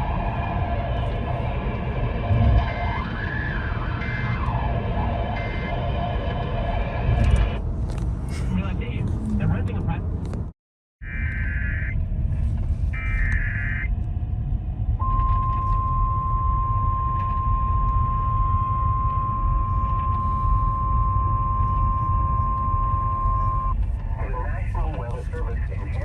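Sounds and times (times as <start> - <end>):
screechy data tones: 0.0 - 7.6, 11.0 - 12.0, 13.0 - 13.9, 15.0 - 24.4
steady alarm tone: 0.0 - 7.6, 12.9 - 13.9, 15.0 - 23.8
steady low rumble: 0.0 - 26.0.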